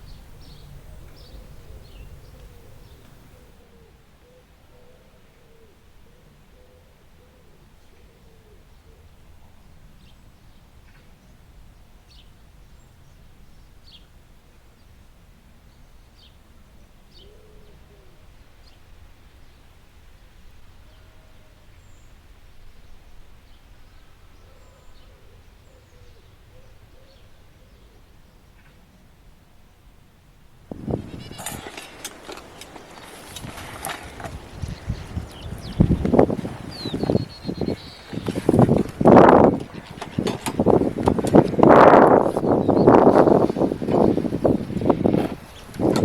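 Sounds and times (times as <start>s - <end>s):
birds chirping: 0.0s - 4.4s, 30.7s - 46.0s.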